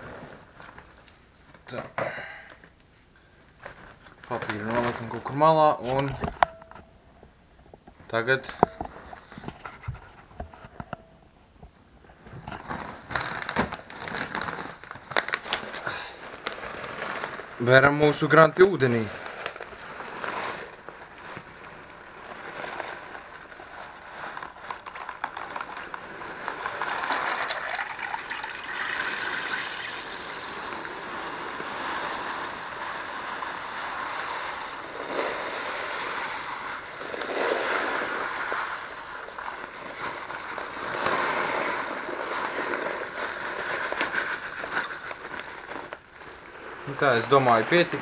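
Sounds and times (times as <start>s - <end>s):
gravel poured into water: 24.4s - 46.2s.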